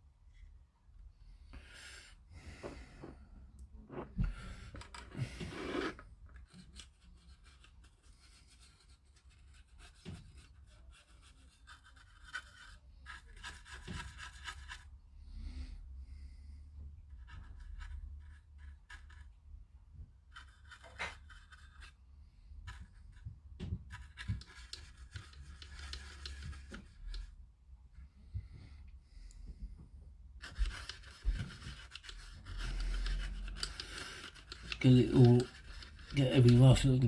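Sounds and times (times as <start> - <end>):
applicator scratching plastic: 3.9 - 7.8, 23.9 - 27.3, 30.4 - 37.0.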